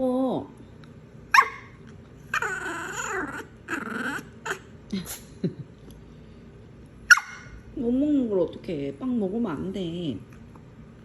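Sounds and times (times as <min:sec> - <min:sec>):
dog yipping: 0:01.3 - 0:04.7, 0:07.0 - 0:07.6
dog whining: 0:01.3 - 0:04.8, 0:07.1 - 0:07.6
dog whimpering: 0:01.4 - 0:04.7.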